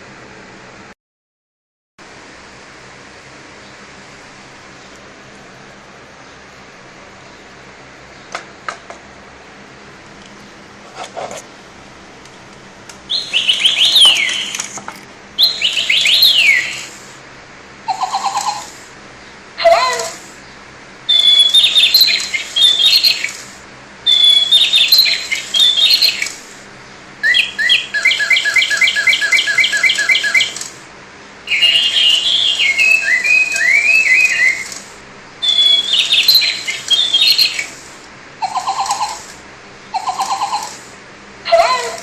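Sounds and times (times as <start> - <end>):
robotic toy bird chirping: 13.1 - 14.8, 15.4 - 17.0, 17.9 - 18.8, 19.6 - 20.3, 21.1 - 26.4, 27.2 - 30.8, 31.5 - 37.8, 38.4 - 40.9, 41.5 - 42.0.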